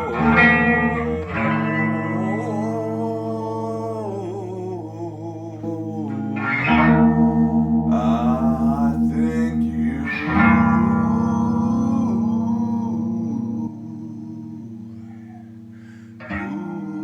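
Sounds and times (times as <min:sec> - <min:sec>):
guitar chords through effects: 0:00.0 - 0:04.1, 0:05.6 - 0:17.0
wavering guitar melody: 0:00.0 - 0:17.0.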